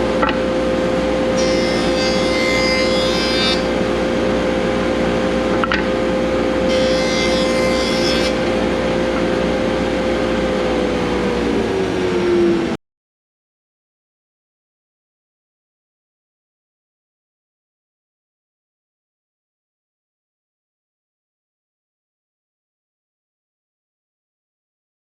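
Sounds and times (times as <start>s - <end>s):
electric saw motor whining: 1.1s - 4.8s, 5.4s - 12.8s
saw blade cutting hardwood: 1.4s - 3.7s, 6.7s - 8.5s.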